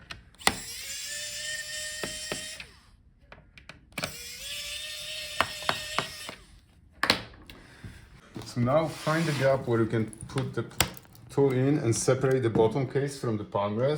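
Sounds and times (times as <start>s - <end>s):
electric screwdriver motor whir: 0.4s - 2.9s, 4.0s - 6.5s.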